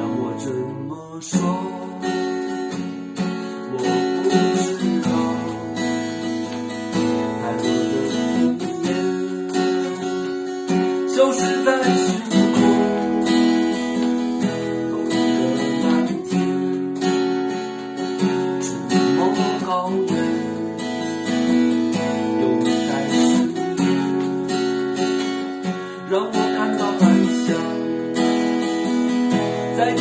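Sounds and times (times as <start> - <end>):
acoustic guitar strumming chords: 0.0 - 30.0.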